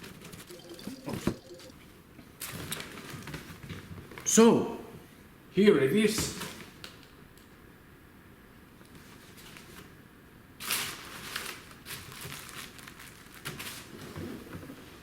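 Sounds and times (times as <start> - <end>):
plastic packaging crinkling: 10.9 - 13.9.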